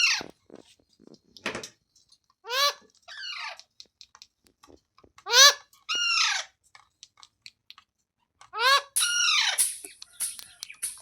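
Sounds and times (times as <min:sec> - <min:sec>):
parrot squawking: 0:00.0 - 0:00.3, 0:02.5 - 0:03.6, 0:05.3 - 0:06.5, 0:08.5 - 0:11.0.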